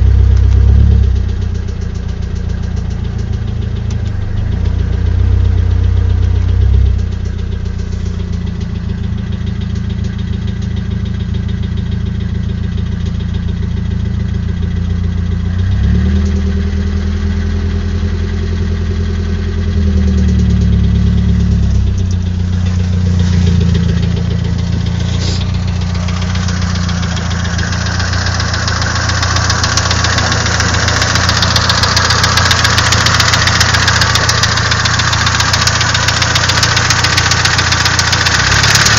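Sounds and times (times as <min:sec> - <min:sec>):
car engine idling with knocking: 0:00.0 - 0:38.9
hiss: 0:25.0 - 0:25.5.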